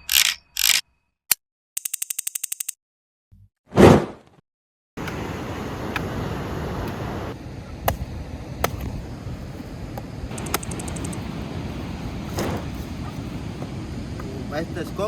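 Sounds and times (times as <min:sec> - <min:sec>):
street traffic noise: 0:05.0 - 0:15.0.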